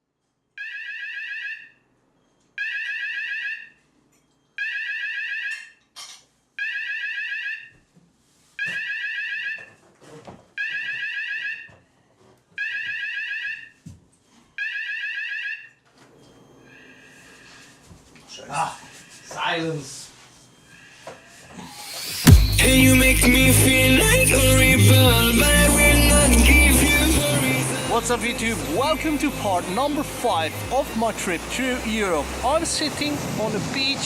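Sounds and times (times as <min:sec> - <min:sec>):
fire alarm warbling beep: 0:00.6 - 0:01.8, 0:02.6 - 0:03.8, 0:04.6 - 0:05.7, 0:06.6 - 0:07.7, 0:08.6 - 0:09.7, 0:10.6 - 0:11.8, 0:12.6 - 0:13.7.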